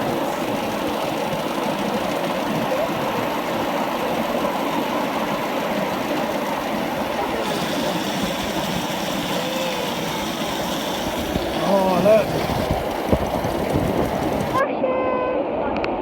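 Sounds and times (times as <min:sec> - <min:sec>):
miniature train wheels rumbling: 0:07.4 - 0:14.6.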